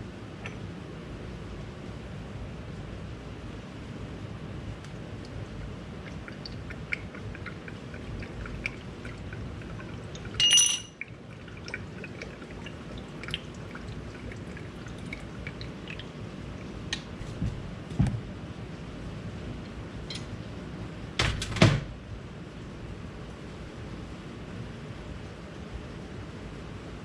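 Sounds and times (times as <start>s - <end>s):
ringing metallic clink: 10.4s - 11.0s.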